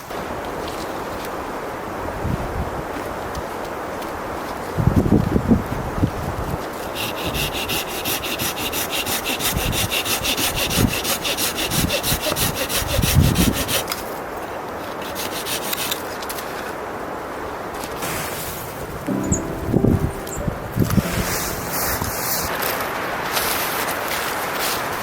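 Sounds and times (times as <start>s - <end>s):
hand saw cutting wood: 6.8s - 14.0s, 14.9s - 16.0s.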